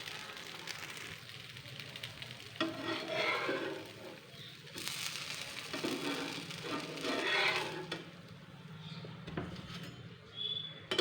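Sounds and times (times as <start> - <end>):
batter sizzling on a griddle: 0.0 - 8.7
spatula scraping a pan: 0.4 - 8.2.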